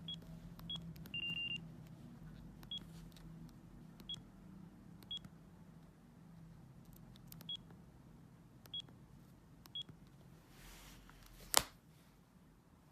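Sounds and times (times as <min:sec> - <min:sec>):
phone key-press beeps: 0:00.0 - 0:01.6, 0:07.4 - 0:07.7.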